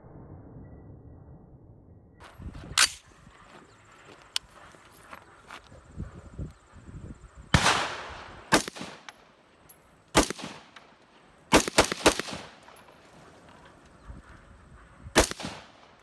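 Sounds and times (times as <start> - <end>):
gunshots: 7.5 - 9.1, 10.1 - 10.9, 11.5 - 12.9, 15.1 - 16.0.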